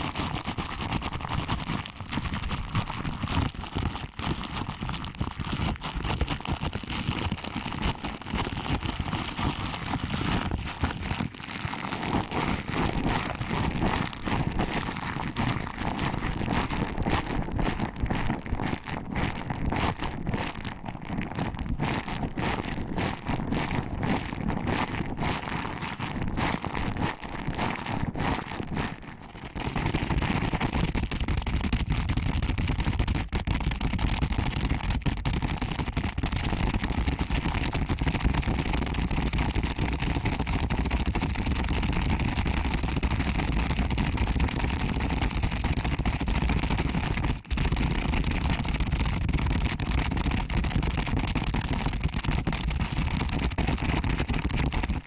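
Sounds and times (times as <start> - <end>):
fingers rubbing microphone ears: 7.8 - 18.8.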